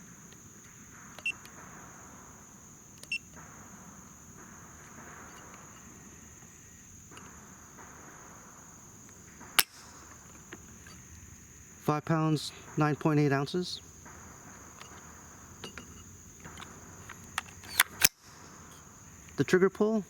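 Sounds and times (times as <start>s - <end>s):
gun hammer metallic click: 9.4s - 11.0s, 16.5s - 18.5s
faint clicks: 12.5s - 19.6s.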